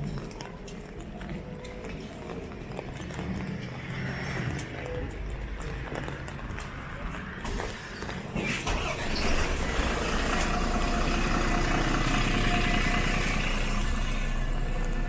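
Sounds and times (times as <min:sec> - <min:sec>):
vehicle engine rumble: 0:00.0 - 0:15.0.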